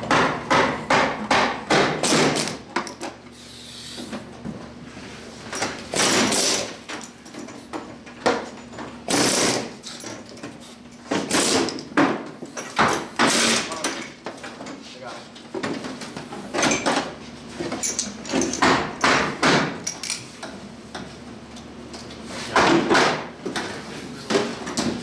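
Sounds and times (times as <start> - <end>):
hammer banging on car body: 0.0 - 2.4, 18.6 - 19.8.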